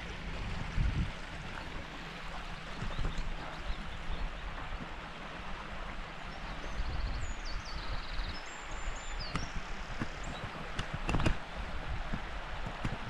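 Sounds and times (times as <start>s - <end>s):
wind buffeting microphone: 0.0s - 4.8s, 5.4s - 13.0s
stream rushing: 0.0s - 13.0s
songbird singing and trilling: 6.4s - 10.6s.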